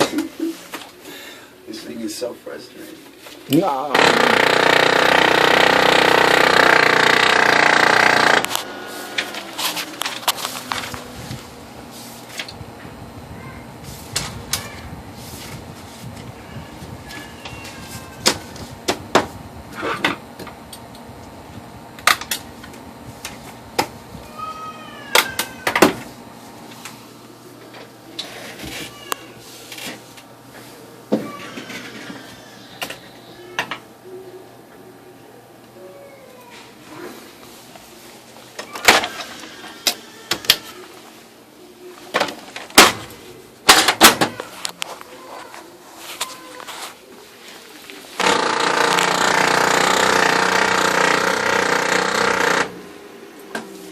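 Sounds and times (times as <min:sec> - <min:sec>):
printer clacking and knocking: 0:48.2 - 0:52.8.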